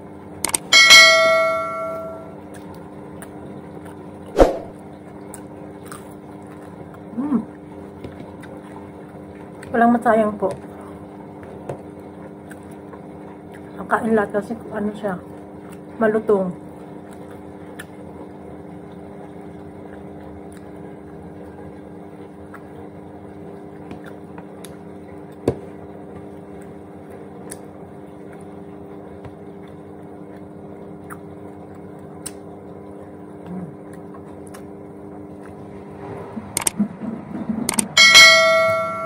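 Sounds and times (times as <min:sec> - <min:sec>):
washing machine humming: 0:00.0 - 0:39.0
eating crunchy fried fish: 0:02.4 - 0:09.8, 0:10.6 - 0:13.8, 0:15.2 - 0:16.0, 0:16.6 - 0:25.4, 0:26.2 - 0:35.6.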